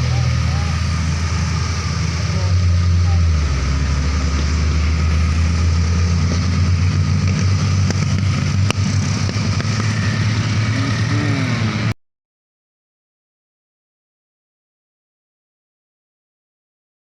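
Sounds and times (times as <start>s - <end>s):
diesel truck engine running: 0.0s - 12.0s.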